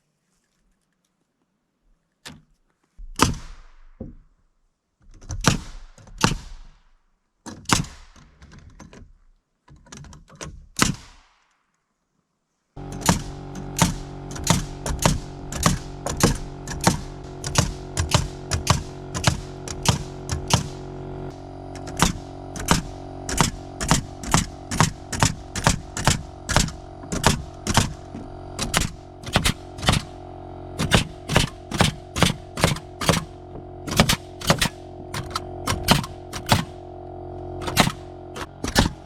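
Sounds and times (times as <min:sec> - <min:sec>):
sharp knocks and thunks: 0:03.0 - 0:04.3, 0:12.9 - 0:20.8, 0:21.8 - 0:30.1, 0:30.8 - 0:36.8, 0:37.6 - 0:39.0.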